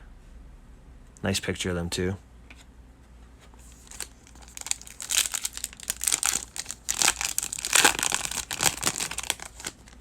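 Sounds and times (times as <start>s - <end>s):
card pack wrapper crinkling and tearing: 3.7s - 10.0s.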